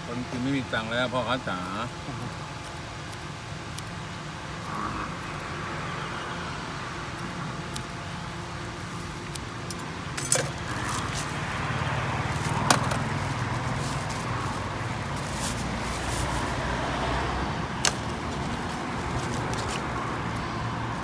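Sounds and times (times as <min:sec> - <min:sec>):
vehicle engine running: 0:03.4 - 0:21.0
sharp clinks: 0:10.2 - 0:10.8.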